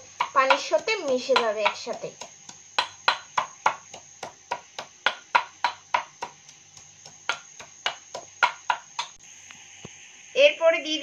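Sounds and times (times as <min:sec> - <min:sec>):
stone pestle pounding spices: 0:00.0 - 0:09.2.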